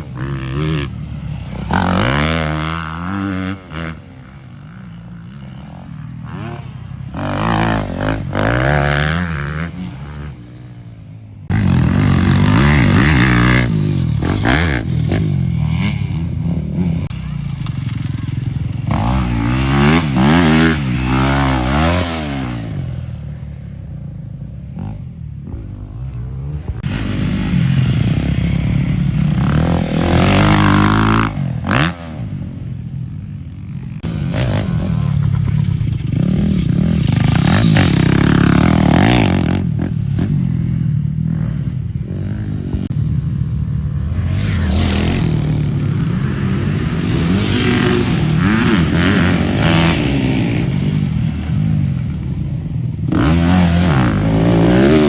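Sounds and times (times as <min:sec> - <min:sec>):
dirt bike engine revving: 0:00.0 - 0:23.3, 0:24.8 - 0:32.6, 0:33.8 - 0:55.0.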